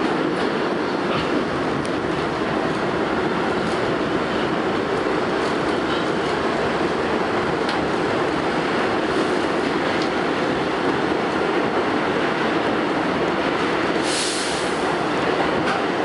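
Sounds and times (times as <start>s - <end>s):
subway wheels rumbling on track: 0.0s - 16.0s
brief high hiss: 14.0s - 14.8s.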